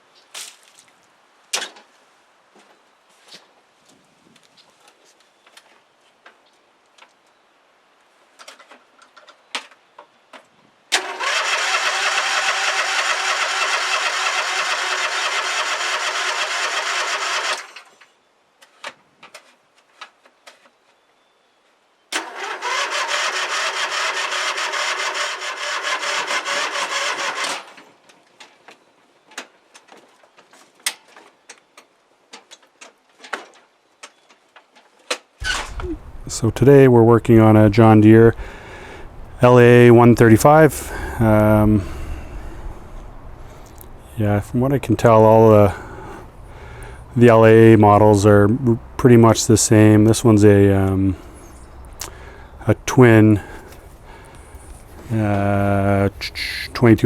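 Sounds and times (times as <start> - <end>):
lawn tractor engine starter cranking: 10.9 - 17.9, 22.1 - 27.8, 35.4 - 36.5, 37.6 - 43.6.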